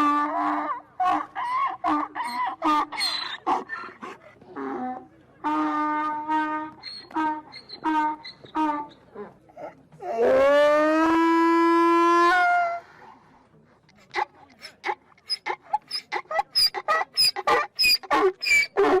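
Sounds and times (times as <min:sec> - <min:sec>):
farm animal calling: 0:00.4 - 0:10.5, 0:14.1 - 0:19.0.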